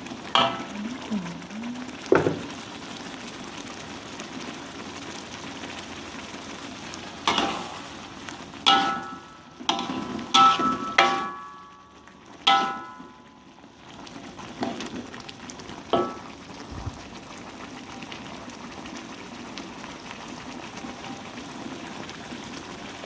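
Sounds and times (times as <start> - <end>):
fish sizzling in pan: 0.0 - 23.0
metal spatula clanking on pan: 0.4 - 0.7, 8.7 - 11.7, 12.5 - 13.2, 16.0 - 16.2.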